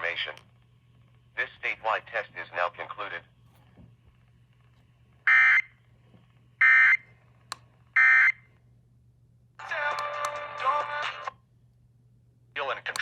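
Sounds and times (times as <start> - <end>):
radio station audio: 1.3 - 3.4.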